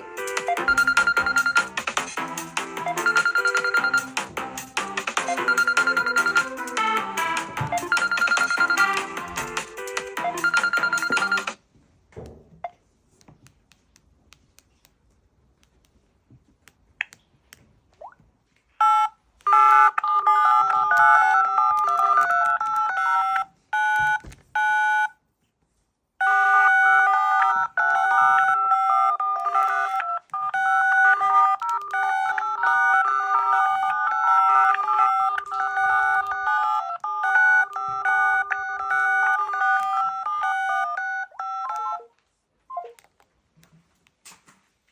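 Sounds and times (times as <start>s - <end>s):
electronic melody of beeps: 0.3s - 1.8s, 2.8s - 4.4s, 5.1s - 11.6s, 18.8s - 25.1s, 26.2s - 42.1s
mobile phone ringtone: 0.3s - 2.2s, 2.8s - 4.4s, 5.0s - 11.6s, 18.8s - 25.1s, 26.2s - 42.1s.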